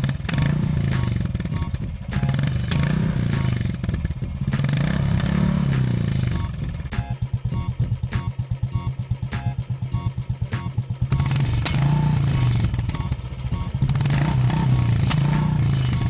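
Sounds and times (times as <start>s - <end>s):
sharp exhaust pops: 0.0s - 7.1s, 10.4s - 16.0s
motorcycle engine revving: 0.0s - 16.0s.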